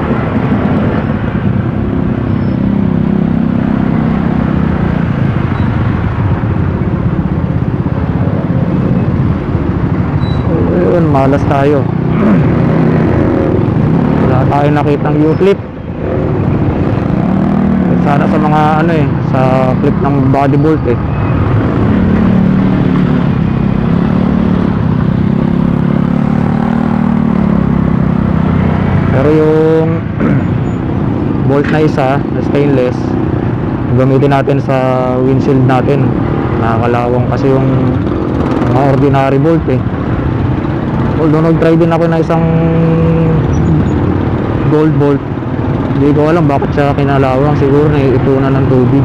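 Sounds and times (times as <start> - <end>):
wind and road noise: 0.0 - 49.0
scooter engine hum: 42.1 - 46.8.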